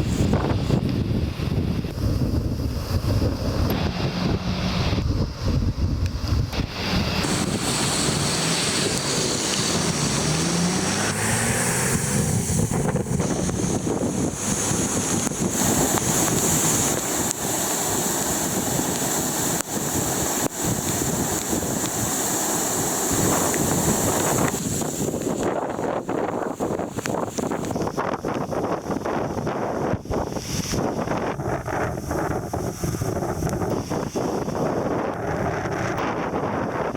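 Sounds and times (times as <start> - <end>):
wind buffeting microphone: 0.0 - 36.9
floodwater rushing: 2.7 - 5.6, 6.5 - 27.7.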